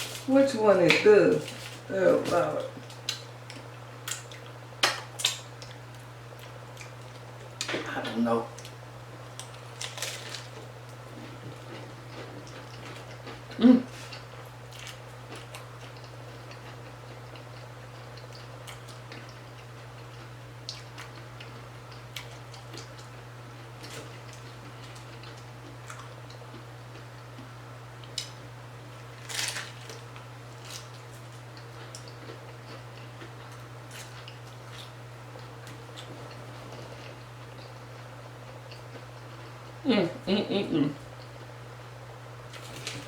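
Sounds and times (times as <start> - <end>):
steady low hum: 0.0 - 43.0
crunchy taco shell chewing: 8.6 - 27.4, 28.0 - 38.0
chewing with wet mouth clicks: 11.6 - 23.2.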